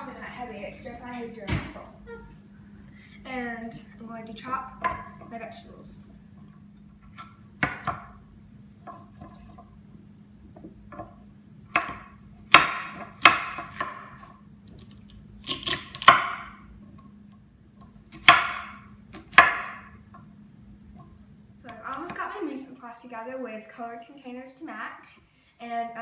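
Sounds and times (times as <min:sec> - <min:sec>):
faint steady hum: 0:00.0 - 0:26.0
knife chopping on cutting board: 0:07.2 - 0:08.1, 0:11.7 - 0:14.3, 0:15.5 - 0:16.6, 0:18.1 - 0:19.9.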